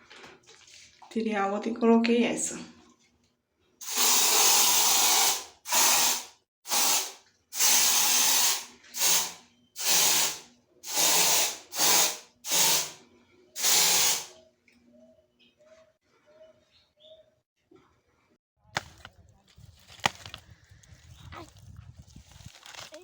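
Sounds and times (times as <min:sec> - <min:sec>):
aerosol can spraying: 0:03.8 - 0:13.0, 0:13.6 - 0:14.4.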